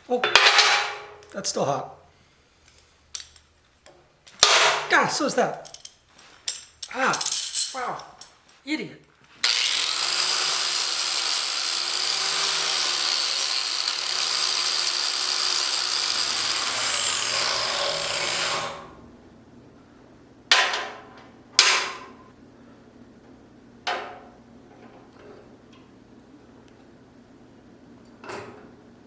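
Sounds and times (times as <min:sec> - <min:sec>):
power tool whining on steel: 0:09.4 - 0:19.0.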